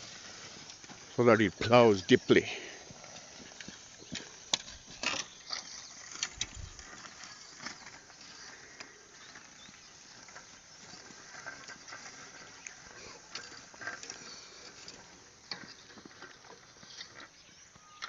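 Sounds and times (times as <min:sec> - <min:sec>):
faint outdoor background: 0:00.0 - 0:18.0.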